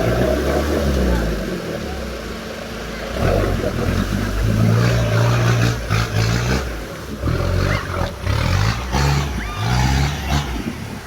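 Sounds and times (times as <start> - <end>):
engine revving hard: 3.1 - 11.0.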